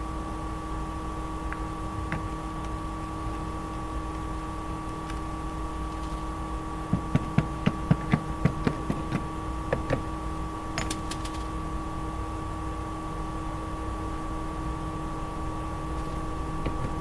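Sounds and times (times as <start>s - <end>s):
steady electrical hum: 0.0s - 17.0s
hammer tapping a nail into wood: 6.9s - 10.1s.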